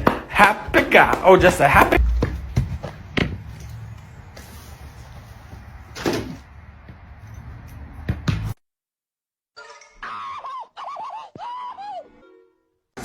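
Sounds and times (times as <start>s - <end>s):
sharp knocks: 1.2s - 3.4s
low steady rumble: 2.0s - 4.6s.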